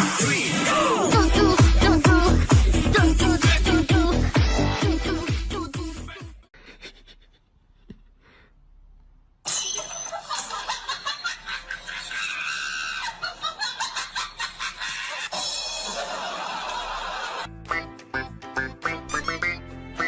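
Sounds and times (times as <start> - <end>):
loud laughter: 10.1 - 17.5.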